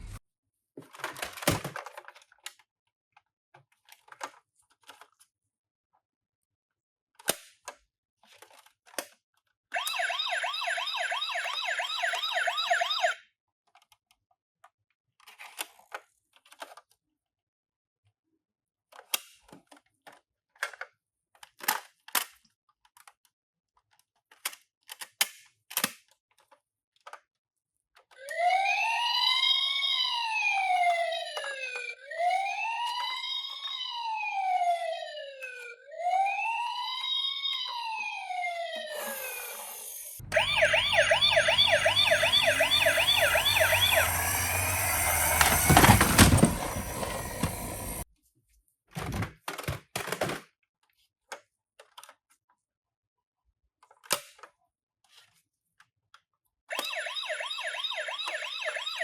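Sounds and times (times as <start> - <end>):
toy electronic siren warble: 9.8 - 13.2, 28.2 - 48.0, 56.7 - 59.0.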